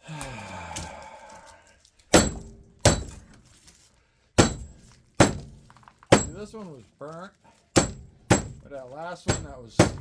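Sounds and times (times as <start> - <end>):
hammer striking steel: 2.1 - 3.2, 4.4 - 6.5, 7.8 - 10.0.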